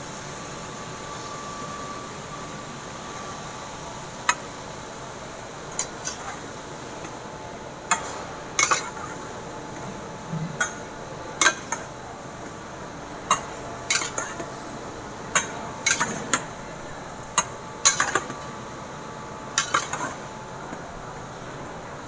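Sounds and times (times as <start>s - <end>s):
steady background hiss: 0.0s - 22.0s
metal utensil clinking on pot: 5.8s - 6.4s, 7.9s - 9.2s, 11.4s - 11.9s, 13.3s - 14.5s, 15.4s - 16.5s, 17.4s - 18.4s, 19.6s - 20.2s.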